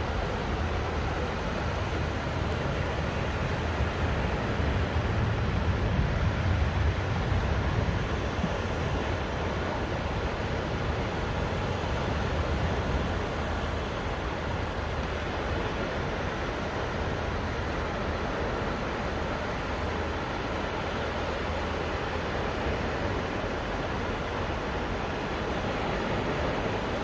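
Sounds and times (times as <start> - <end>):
wind rumble on microphone: 0.0 - 20.2
waves washing onto beach: 0.0 - 27.0.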